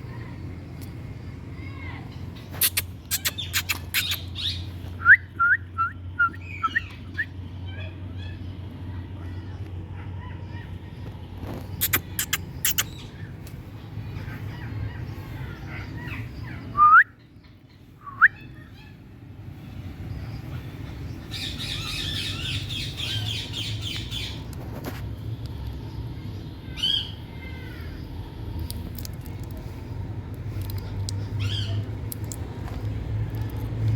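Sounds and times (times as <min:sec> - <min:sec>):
parrot chatter: 0:02.5 - 0:04.6, 0:11.5 - 0:13.4
parrot squawking: 0:02.6 - 0:04.6.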